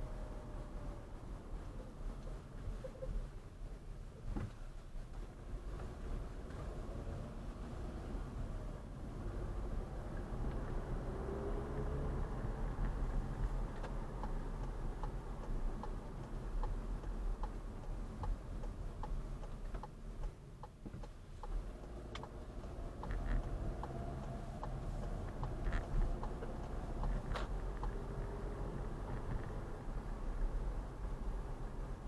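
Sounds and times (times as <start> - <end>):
car driving hum: 0.0 - 32.0
turn signal clicking: 9.4 - 32.0.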